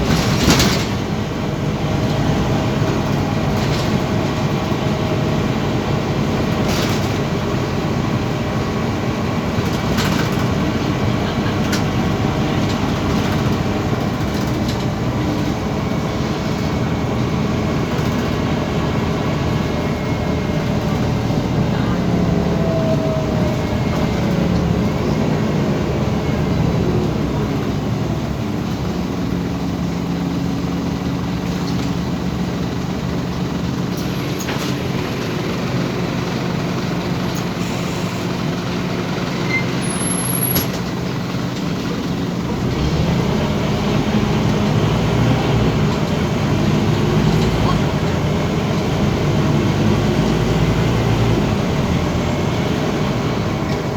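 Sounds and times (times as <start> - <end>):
bus engine and road rumble: 0.0 - 53.9.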